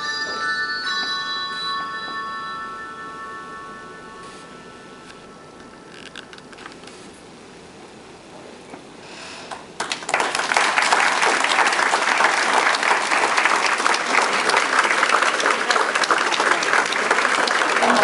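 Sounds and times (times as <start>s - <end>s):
audience applause: 9.5s - 18.0s.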